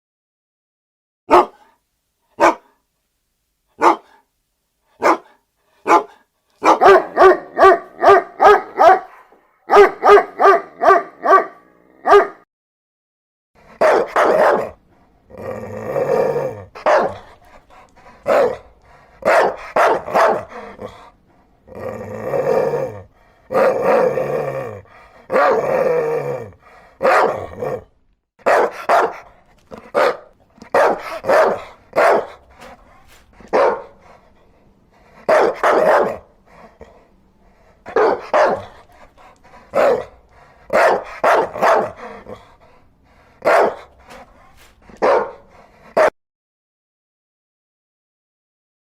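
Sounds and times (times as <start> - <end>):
dogs barking: 1.3 - 1.7, 2.4 - 2.8, 3.8 - 4.2, 5.0 - 12.4, 13.7 - 14.8, 16.3 - 21.0, 25.3 - 25.8, 27.0 - 27.8, 28.4 - 34.3, 35.0 - 36.9, 37.8 - 42.5, 43.4 - 46.1.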